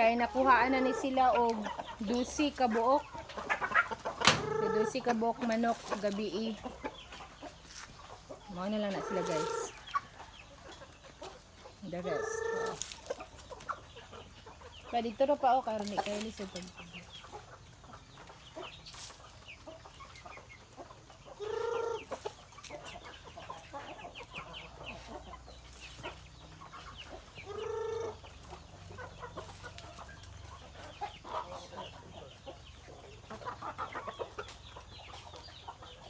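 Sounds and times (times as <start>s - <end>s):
chickens clucking: 0.0s - 36.0s
chicken short pitched calls: 3.6s - 5.0s.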